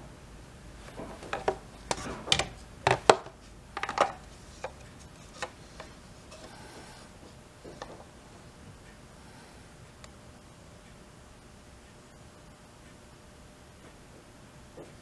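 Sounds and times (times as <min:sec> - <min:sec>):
objects clicking and knocking: 0:00.9 - 0:06.5.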